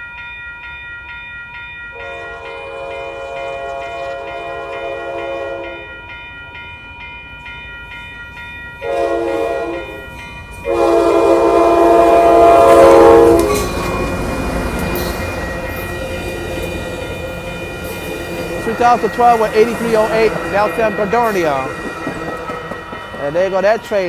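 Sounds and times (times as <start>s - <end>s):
crossing bell ringing: 0.0s - 24.0s
passing train rumble: 1.9s - 24.0s
locomotive horn blasts: 2.0s - 5.8s, 8.8s - 10.0s, 10.7s - 23.2s.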